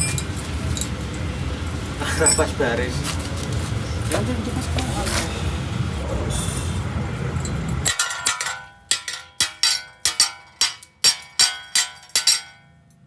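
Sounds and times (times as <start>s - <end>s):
hammer tapping metal: 7.4s - 13.0s.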